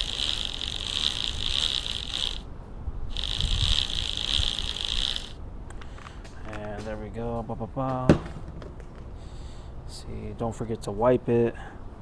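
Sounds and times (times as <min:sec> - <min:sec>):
bike chain whirring: 0:00.0 - 0:02.5, 0:03.1 - 0:06.4
low knocks: 0:07.8 - 0:09.4.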